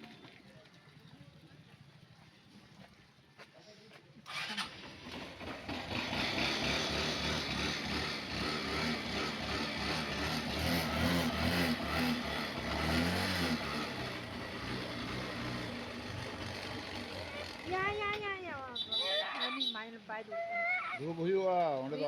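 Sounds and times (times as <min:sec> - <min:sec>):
motorcycle engine pulling away: 0:04.2 - 0:18.1.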